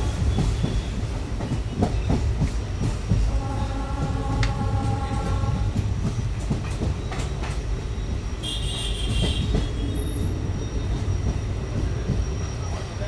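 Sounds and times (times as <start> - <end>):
train rumbling along track: 0.0 - 13.0
locomotive horn: 8.4 - 10.0.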